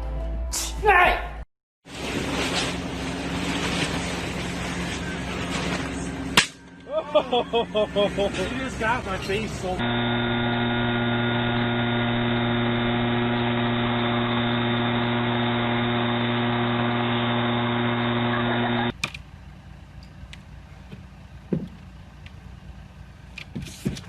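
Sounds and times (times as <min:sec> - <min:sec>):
steady buzzing hum: 0:09.7 - 0:18.9.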